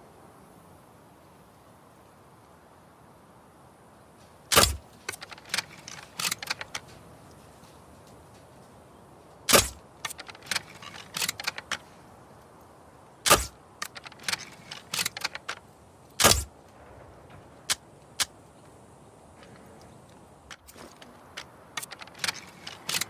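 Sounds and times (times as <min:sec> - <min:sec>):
crossbow shots: 0:04.5 - 0:06.8, 0:09.5 - 0:11.8, 0:13.2 - 0:15.6, 0:16.2 - 0:16.5, 0:20.5 - 0:23.0
small mechanical clicks: 0:04.5 - 0:08.2, 0:09.4 - 0:12.0, 0:13.2 - 0:16.5, 0:19.4 - 0:23.0.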